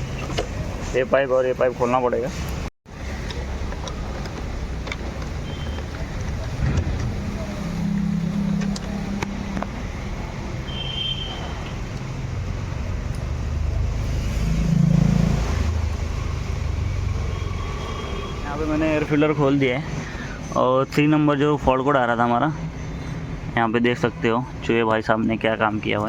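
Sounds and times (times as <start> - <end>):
vehicle rumble: 0.0 - 20.6.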